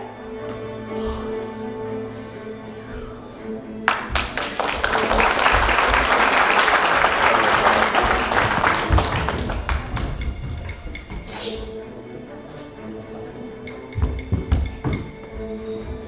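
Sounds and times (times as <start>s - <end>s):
background music: 0.0s - 16.0s
audience applauding: 3.9s - 10.4s.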